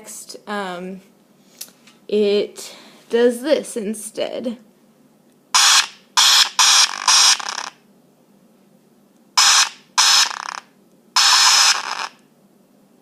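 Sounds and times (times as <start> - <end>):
phone speaker crackly static bursts: 5.6 - 7.8, 9.4 - 12.2.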